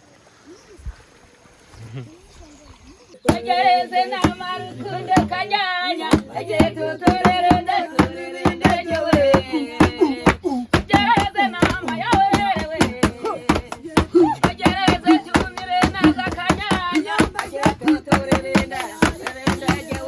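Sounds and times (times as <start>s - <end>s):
people singing: 3.2s - 20.0s
rapid hand claps: 6.1s - 20.0s.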